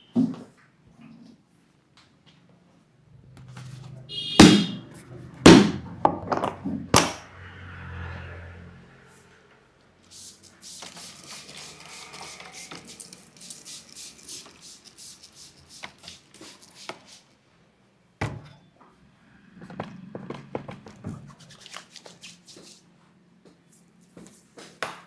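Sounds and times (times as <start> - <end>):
loud sharp smack: 4.4 - 4.8, 5.5 - 5.8.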